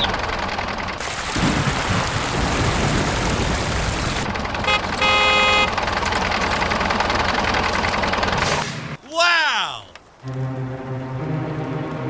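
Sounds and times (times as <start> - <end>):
vehicle horn honking: 4.6 - 5.8.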